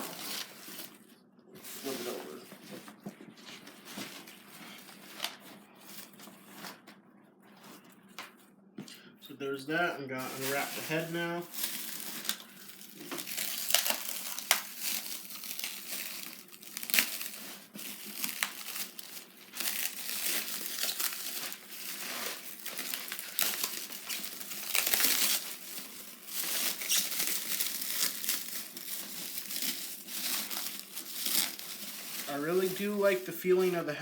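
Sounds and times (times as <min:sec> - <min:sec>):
packaging wrap crinkling and tearing: 0:00.0 - 0:02.4, 0:10.2 - 0:33.7.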